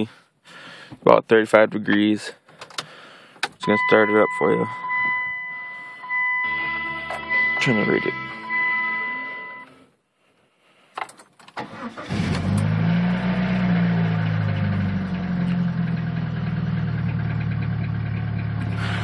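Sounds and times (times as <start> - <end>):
car engine cranking and idling: 2.4 - 9.2, 11.0 - 19.0
dashboard chime tone: 3.6 - 9.8.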